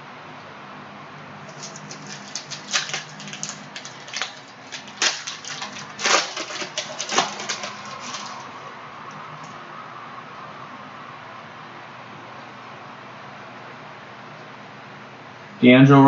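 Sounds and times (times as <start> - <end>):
plastic wrapper crinkling and tearing: 1.5 - 8.6.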